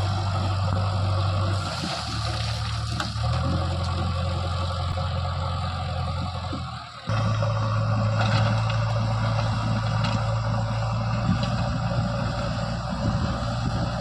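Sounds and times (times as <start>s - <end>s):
diesel engine running: 0.0s - 14.0s.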